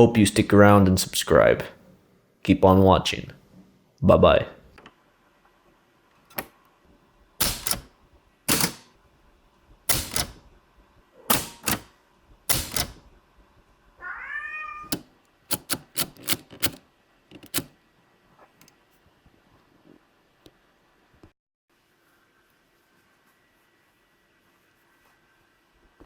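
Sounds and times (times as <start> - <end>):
typewriter keys striking: 7.4 - 7.9, 8.5 - 8.9, 9.9 - 10.5, 11.3 - 13.1, 14.9 - 17.7
cat meowing: 14.0 - 15.0.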